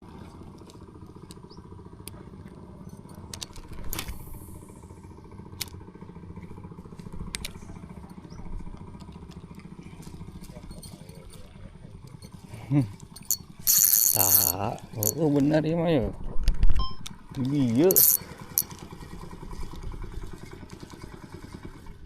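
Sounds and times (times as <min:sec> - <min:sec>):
small engine running: 0:00.0 - 0:15.4, 0:17.5 - 0:22.0.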